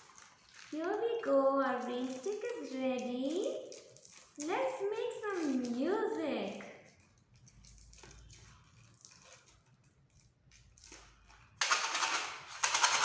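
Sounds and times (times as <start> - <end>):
rain stick seeds rattling: 0.0 - 8.3.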